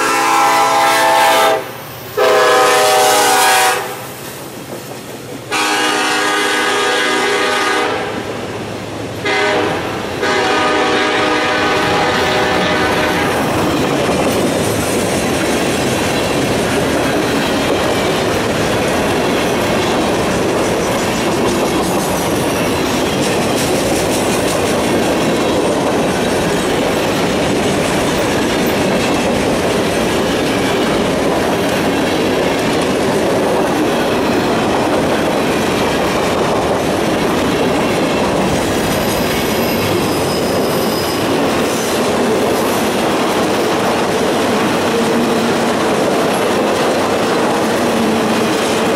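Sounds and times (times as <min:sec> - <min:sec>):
freight train rumbling: 0:00.0 - 0:48.9
wheels clickety-clack: 0:04.4 - 0:05.5, 0:12.9 - 0:48.9
high wheel squeal: 0:38.6 - 0:42.9.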